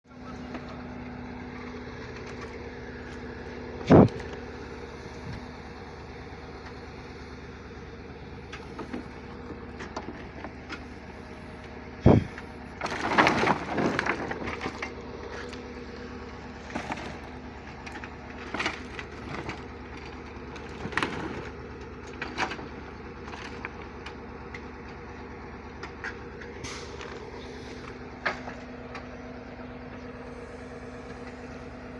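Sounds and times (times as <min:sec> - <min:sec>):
engine running: 0:00.0 - 0:31.9
crunching and rattling: 0:07.8 - 0:29.2
knocks and clatter: 0:12.8 - 0:15.0.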